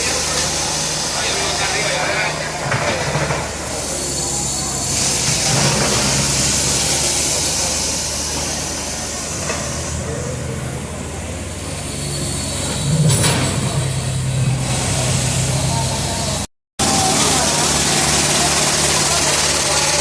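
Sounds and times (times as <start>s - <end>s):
engine running: 0.0s - 20.0s
loud hiss: 3.4s - 10.4s, 14.2s - 20.0s.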